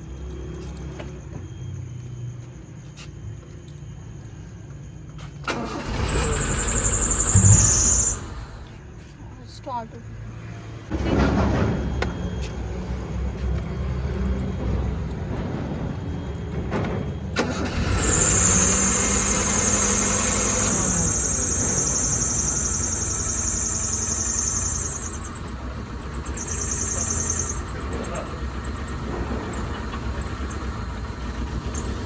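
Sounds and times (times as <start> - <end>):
car engine starting and revving: 5.4 - 8.7, 17.4 - 32.0
high-pitched whine: 6.3 - 8.7, 18.0 - 28.4.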